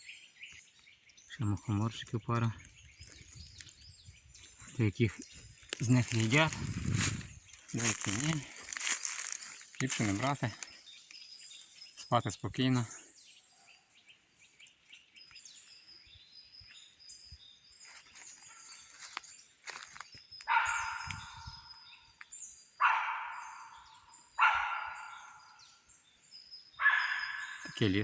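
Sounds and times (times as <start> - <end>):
dog barking with echo: 20.5 - 21.4, 22.8 - 25.6, 26.8 - 27.7.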